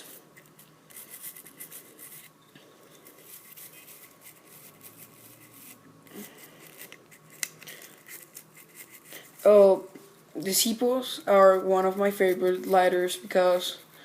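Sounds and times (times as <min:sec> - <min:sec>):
toothbrush scrubbing metal: 0:00.0 - 0:02.3, 0:03.0 - 0:09.6.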